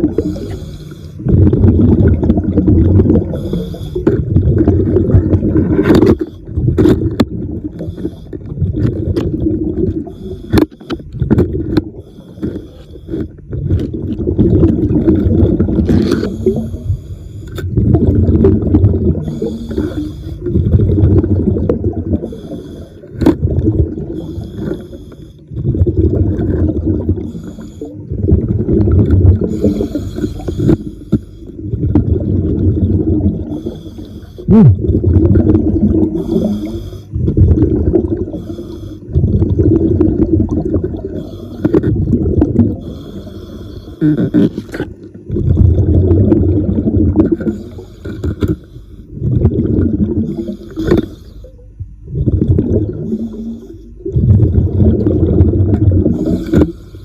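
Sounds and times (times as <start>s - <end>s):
exhaled bubbles rumbling underwater: 0.0s - 57.0s
regulator air hiss: 38.3s - 39.1s.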